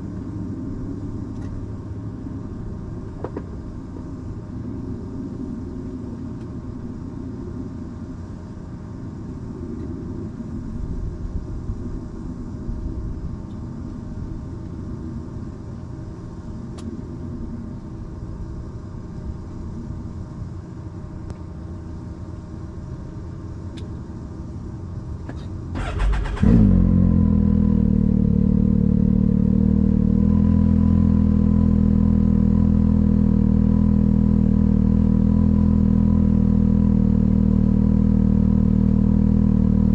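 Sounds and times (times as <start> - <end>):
low steady rumble: 0.0 - 39.9
engine cranking and idling: 25.7 - 26.9.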